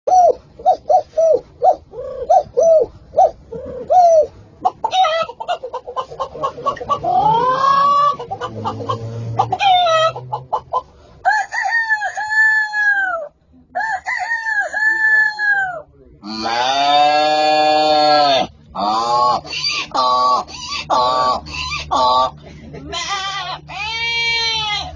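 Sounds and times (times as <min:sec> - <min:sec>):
animal calls: 0:00.1 - 0:11.1, 0:16.2 - 0:24.9.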